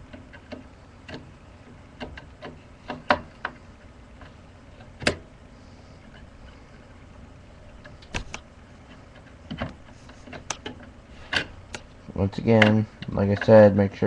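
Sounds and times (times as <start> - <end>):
computer parts clicking: 7.8 - 13.6.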